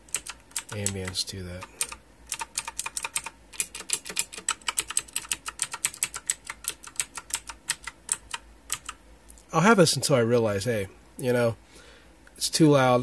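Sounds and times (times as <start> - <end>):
clicky mechanical keyboard typing: 0.0 - 9.0.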